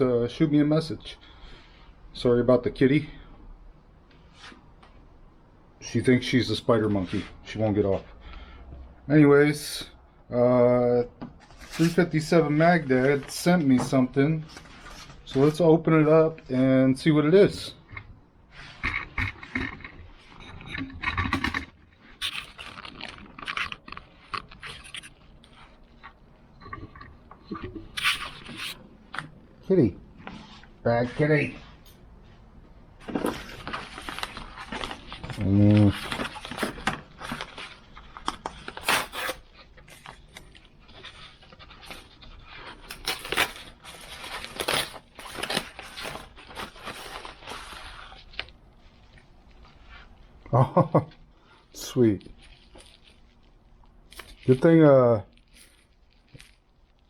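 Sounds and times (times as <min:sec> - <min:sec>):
packaging rustling and scraping: 0:11.4 - 0:29.4, 0:33.0 - 0:50.4, 0:51.8 - 0:57.0
package being ripped open: 0:38.2 - 0:40.4, 0:42.7 - 0:47.6.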